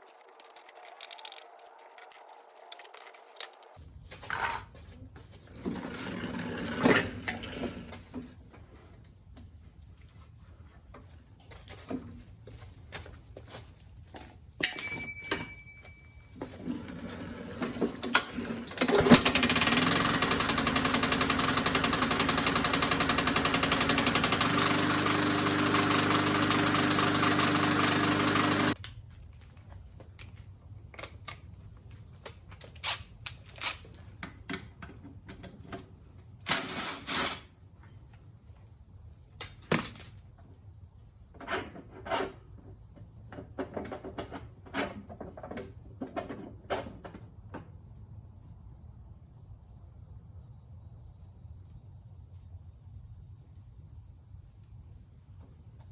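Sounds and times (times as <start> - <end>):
small engine running: 16.6 - 28.8.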